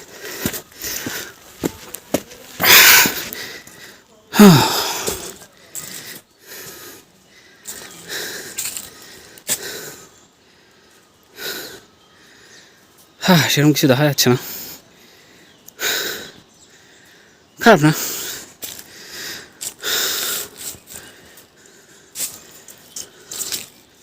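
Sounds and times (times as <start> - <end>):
person breathing hard: 0.0 - 1.8, 2.6 - 12.8, 18.0 - 23.7.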